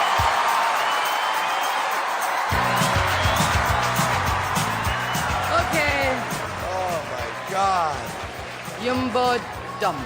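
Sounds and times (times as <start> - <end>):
music with beat and bass line: 2.5 - 9.8.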